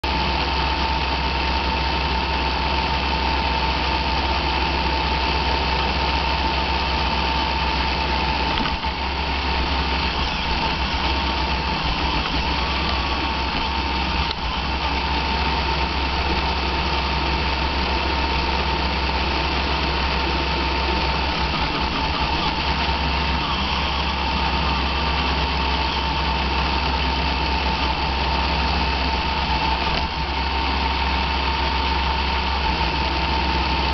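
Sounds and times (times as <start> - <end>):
robot vacuum motor whine: 8.4 - 33.0.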